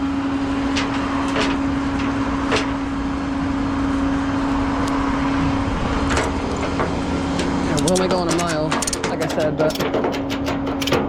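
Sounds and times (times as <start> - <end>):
truck engine running: 0.0 - 11.0.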